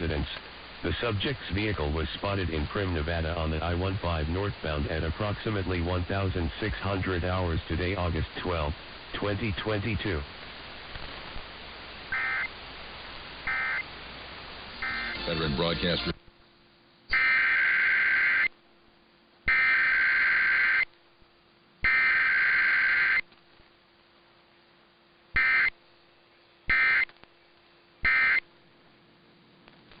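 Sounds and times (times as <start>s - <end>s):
faint steady hum: 0.0s - 30.0s
two-tone digital modem bursts: 12.1s - 12.5s, 13.5s - 13.8s, 14.8s - 16.2s, 17.1s - 18.5s, 19.5s - 20.9s, 21.8s - 23.2s, 25.4s - 25.7s, 26.7s - 27.1s, 28.0s - 28.4s.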